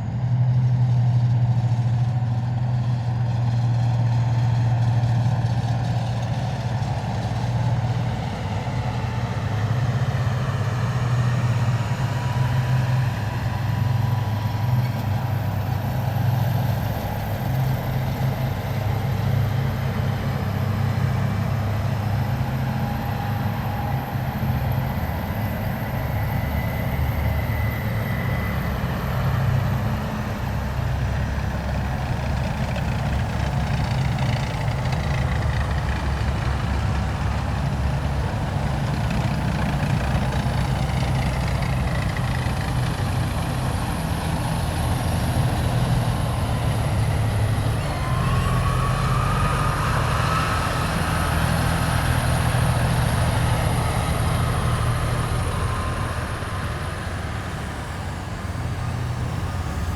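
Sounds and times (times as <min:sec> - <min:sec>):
heavy vehicle engine rumble: 0:00.0 - 0:59.9
rising whine: 0:22.2 - 0:59.9.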